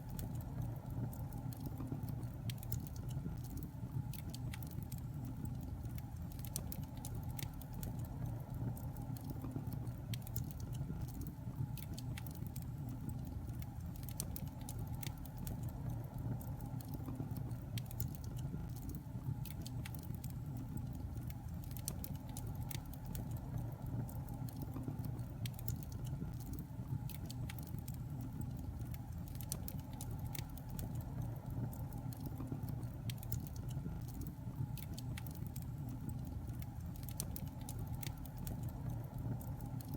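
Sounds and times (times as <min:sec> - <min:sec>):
fire crackling and popping: 0:00.0 - 0:39.9.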